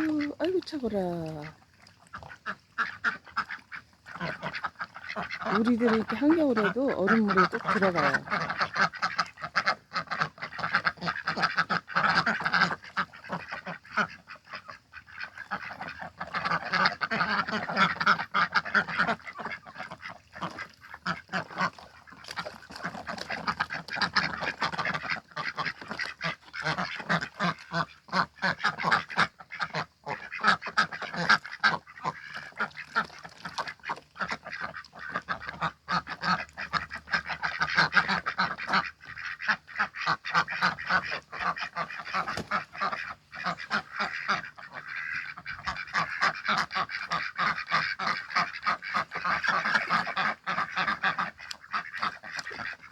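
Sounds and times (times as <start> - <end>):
ducks quacking: 0.0 - 52.9.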